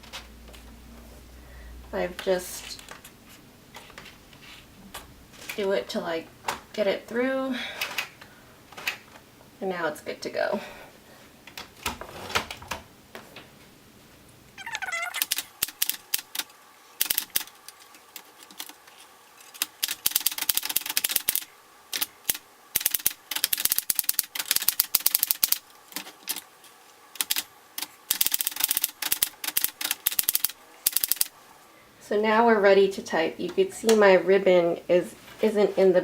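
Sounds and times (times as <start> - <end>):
manual typewriter keys striking: 15.2 - 18.8, 19.4 - 26.5, 27.2 - 31.3.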